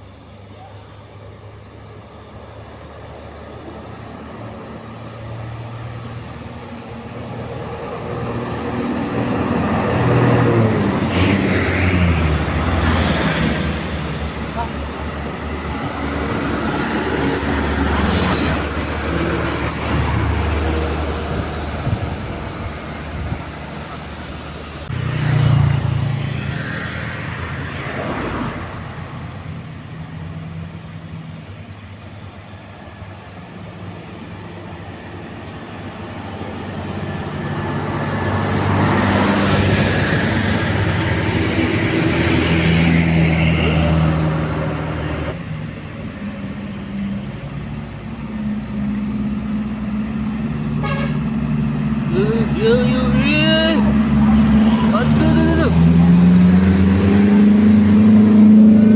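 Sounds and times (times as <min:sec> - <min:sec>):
heavy vehicle engines passing: 0:00.0 - 0:58.9.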